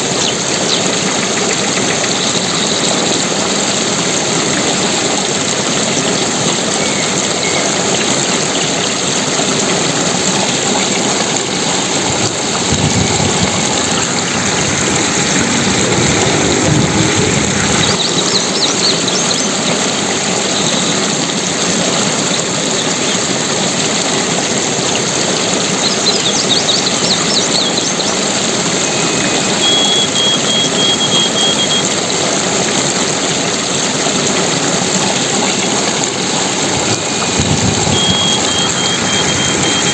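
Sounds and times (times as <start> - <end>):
flowing water rushing: 0.0 - 39.9
high chirps: 28.7 - 31.9, 37.7 - 39.9.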